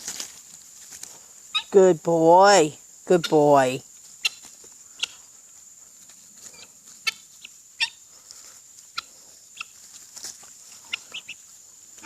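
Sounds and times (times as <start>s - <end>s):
birds calling softly: 3.1s - 12.0s.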